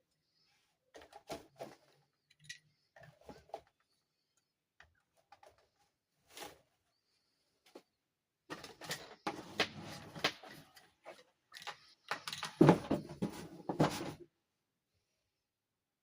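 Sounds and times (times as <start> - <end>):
plastic parts clicking and knocking: 0.9 - 4.0, 8.5 - 14.2.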